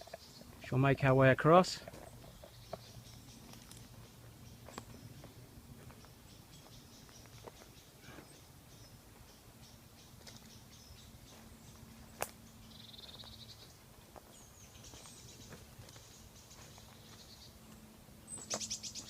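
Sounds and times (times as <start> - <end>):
birds chirping: 0.0 - 19.0
footsteps on forest floor: 1.8 - 8.3, 10.1 - 19.0
bird trill: 12.4 - 13.8, 18.4 - 19.0.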